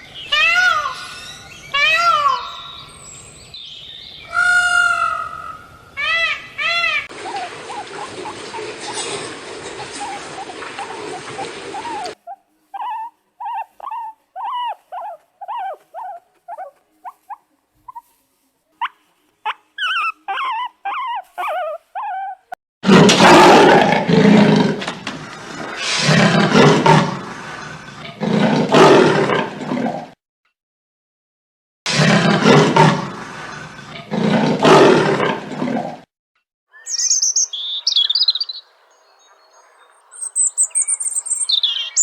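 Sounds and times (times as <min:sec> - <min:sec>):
large animal roaring and growling: 0:22.8 - 0:30.2, 0:31.9 - 0:36.0.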